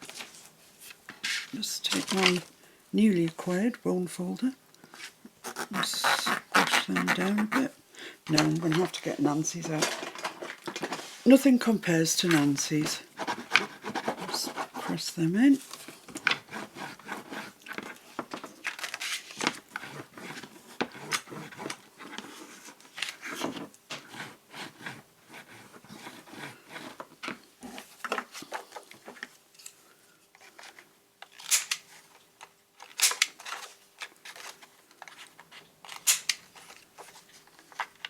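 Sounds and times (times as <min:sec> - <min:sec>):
paper and card rustling: 0:00.0 - 0:02.5, 0:04.9 - 0:11.4, 0:12.2 - 0:29.3, 0:32.8 - 0:38.0
scissors cutting card: 0:05.5 - 0:07.7.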